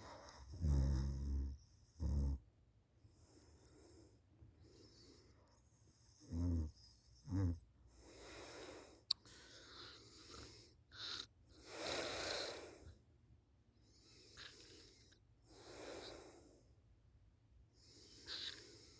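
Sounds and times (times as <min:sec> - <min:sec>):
noisy breaths: 0:00.0 - 0:00.5, 0:07.9 - 0:13.1, 0:13.7 - 0:16.8.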